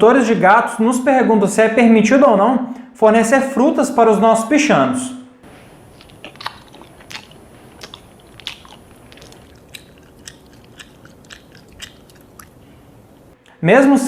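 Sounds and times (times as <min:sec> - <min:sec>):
faint steady background noise: 0:00.0 - 0:14.0
chewing crunching clicks: 0:05.8 - 0:13.6.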